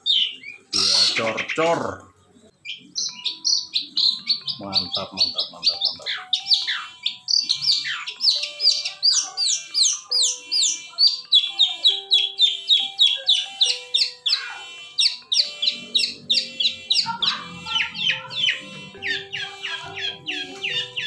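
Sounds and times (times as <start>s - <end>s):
bird singing fast sharp notes: 0.0s - 1.8s, 2.6s - 21.0s.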